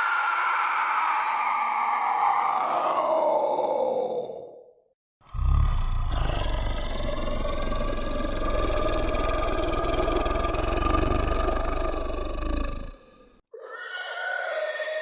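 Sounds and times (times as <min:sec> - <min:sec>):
deep monster growl: 0:05.2 - 0:13.4
higher-pitched tonal growl: 0:05.3 - 0:13.4.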